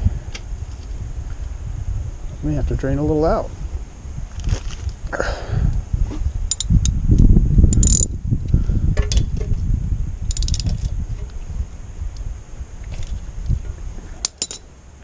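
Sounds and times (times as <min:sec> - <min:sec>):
low rumble: 0:00.0 - 0:14.3
tools and metal parts clinking: 0:06.5 - 0:07.0, 0:07.7 - 0:08.1, 0:08.9 - 0:09.6, 0:10.2 - 0:15.0.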